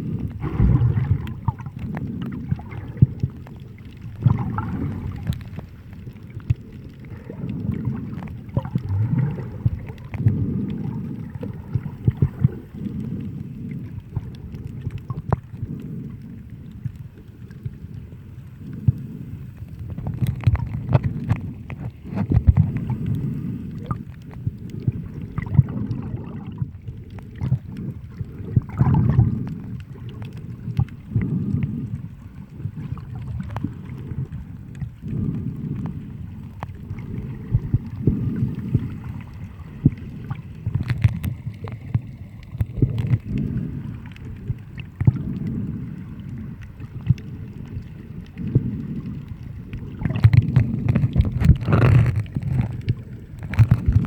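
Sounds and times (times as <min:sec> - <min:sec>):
sea water sloshing: 0:00.0 - 0:54.0
small clicks and taps: 0:40.7 - 0:43.4.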